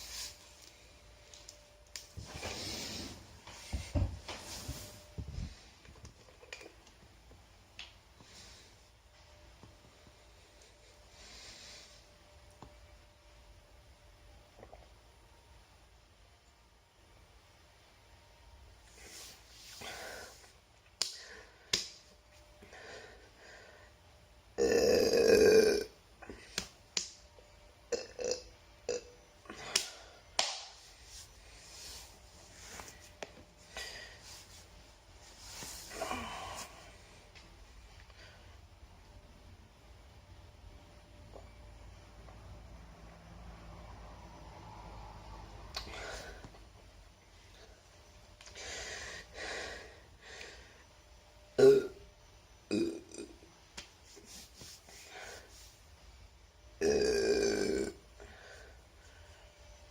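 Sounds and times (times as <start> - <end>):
person burping: 24.6 - 26.0, 27.9 - 29.2, 51.6 - 52.0, 52.7 - 53.5, 56.8 - 58.0
heavy breathing: 35.6 - 37.0.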